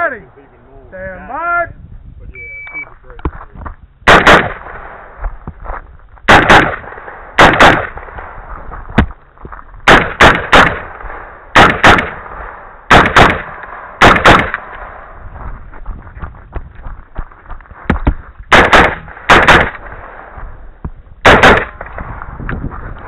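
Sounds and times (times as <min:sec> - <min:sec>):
rifle shots with echo: 0:04.0 - 0:05.2, 0:06.3 - 0:09.1, 0:09.8 - 0:15.2, 0:18.5 - 0:20.5, 0:21.2 - 0:22.2.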